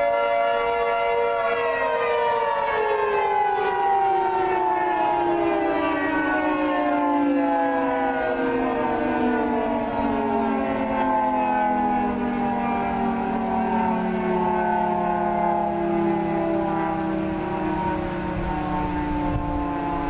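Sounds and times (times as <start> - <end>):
tornado warning siren: 0.0 - 20.0.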